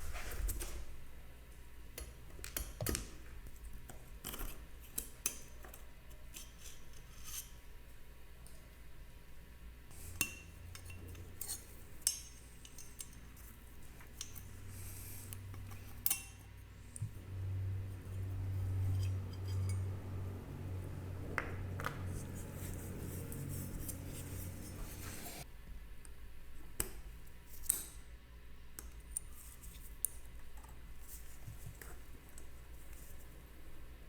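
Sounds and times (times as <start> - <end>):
low hum: 17.0 - 25.4.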